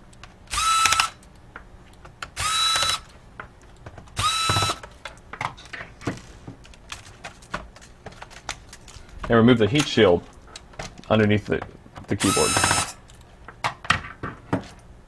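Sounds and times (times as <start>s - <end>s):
electric screwdriver whining: 0.5s - 1.2s, 2.4s - 3.1s, 4.2s - 4.8s, 12.2s - 13.0s.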